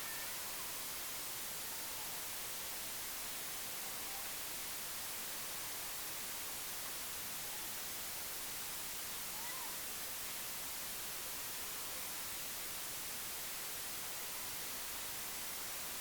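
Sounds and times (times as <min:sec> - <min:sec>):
steady hiss: 0:00.0 - 0:16.0.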